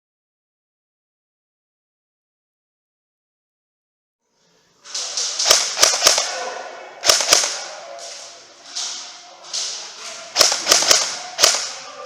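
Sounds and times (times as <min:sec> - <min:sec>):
airsoft gun shots: 0:05.2 - 0:06.4, 0:07.0 - 0:07.6, 0:10.4 - 0:11.8.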